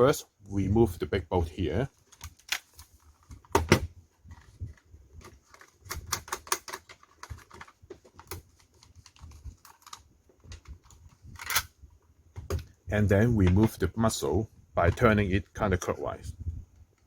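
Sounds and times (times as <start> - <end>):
tool clicking on metal and plastic: 5.2 - 11.7.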